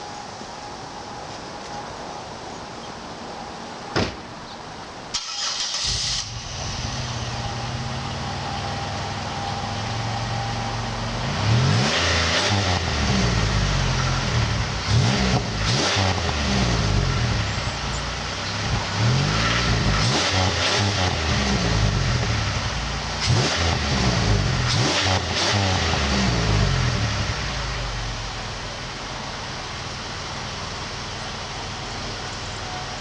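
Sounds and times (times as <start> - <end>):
car engine cranking and idling: 5.0 - 33.0
engine revving in throttle blips: 5.2 - 28.4.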